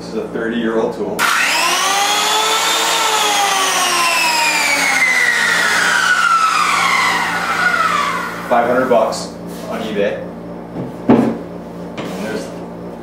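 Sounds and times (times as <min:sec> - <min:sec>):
electric hand planer motor whining: 0:01.2 - 0:08.5.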